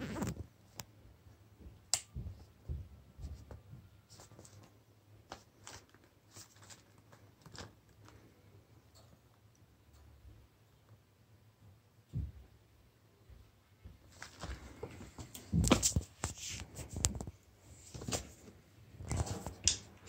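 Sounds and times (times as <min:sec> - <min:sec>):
cardboard packaging rustling: 0:04.1 - 0:08.2.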